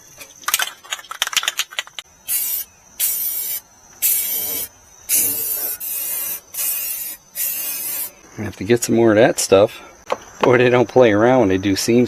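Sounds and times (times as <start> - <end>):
aerosol spray hissing: 2.3 - 8.2.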